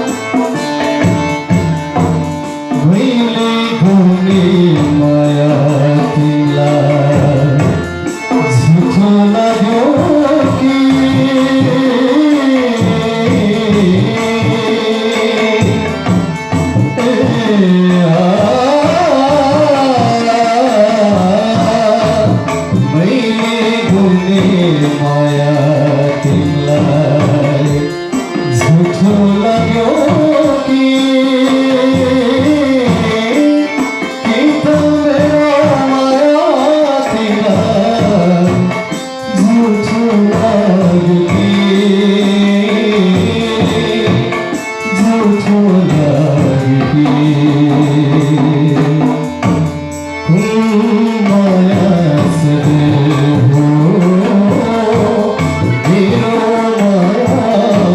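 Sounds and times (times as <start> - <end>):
hand drum rhythm: 0.0 - 57.9
instrumental accompaniment: 0.0 - 57.9
person singing ornamented melody: 2.0 - 49.4, 50.2 - 57.9.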